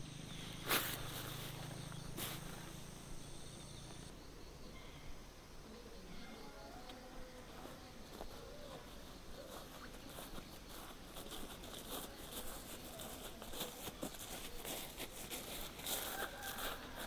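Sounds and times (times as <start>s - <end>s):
faint rustling: 0.2s - 4.1s.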